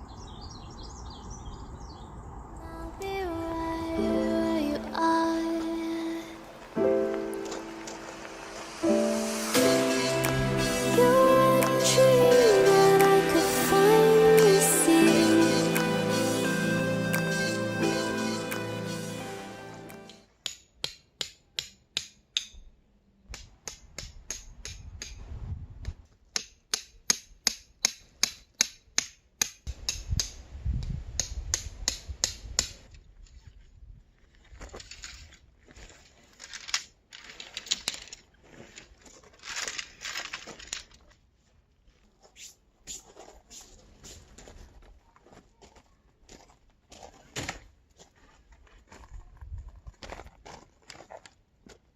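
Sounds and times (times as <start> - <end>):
sharp evenly spaced knocks: 20.0 - 22.7, 23.3 - 25.2
rustling: 34.3 - 42.4.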